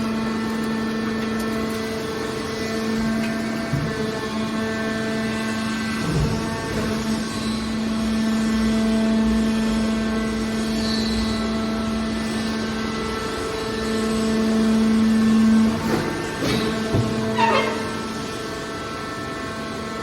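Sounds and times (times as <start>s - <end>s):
hydraulic power unit humming: 0.0s - 20.0s.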